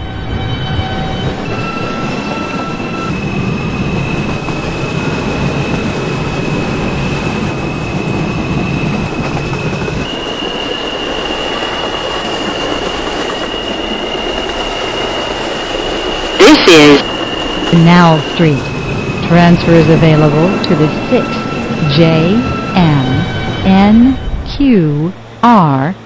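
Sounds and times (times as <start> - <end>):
subway train rumble and rail noise: 0.0 - 26.0
high steady whine: 16.4 - 17.1.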